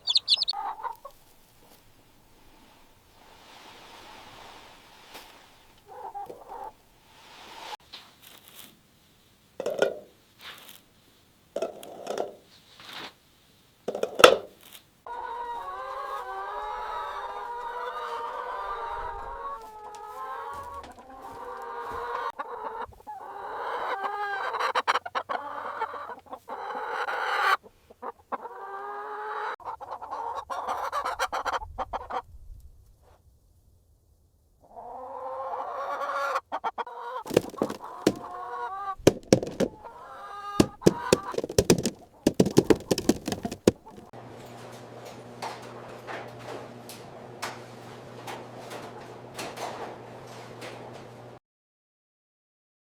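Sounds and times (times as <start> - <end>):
chickens clucking: 0.0 - 1.0, 37.3 - 38.3, 39.1 - 39.8, 40.6 - 44.0.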